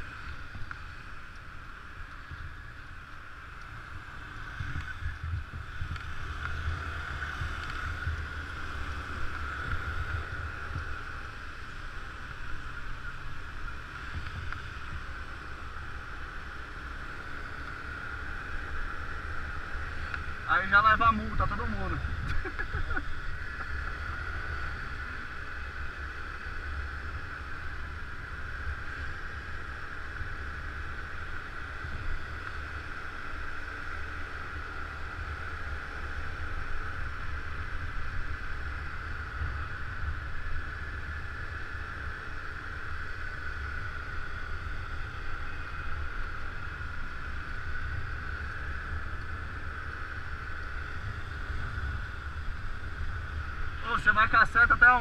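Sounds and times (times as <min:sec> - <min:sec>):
motor scooter rumble: 0:00.0 - 0:55.0.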